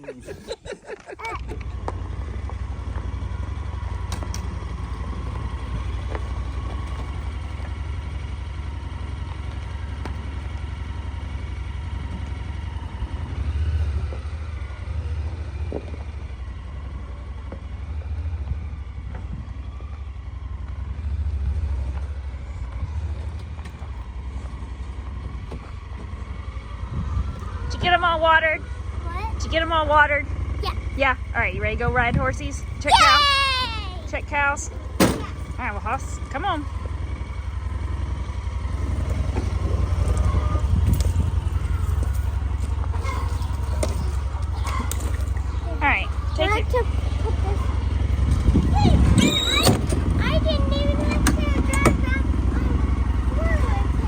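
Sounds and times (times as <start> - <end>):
vehicle engine rumbling: 0.0 - 54.0.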